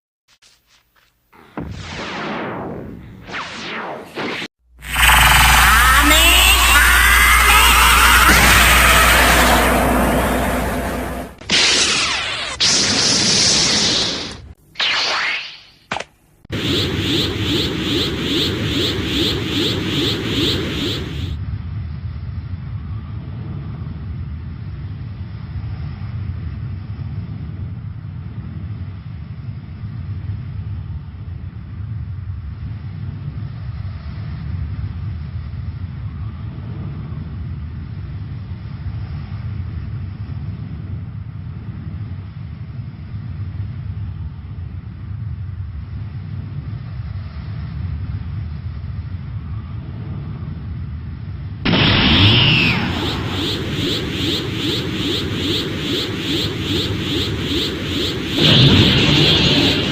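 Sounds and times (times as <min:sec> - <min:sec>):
steady low rumble: 0:04.8 - 0:11.4, 0:49.8 - 0:59.9.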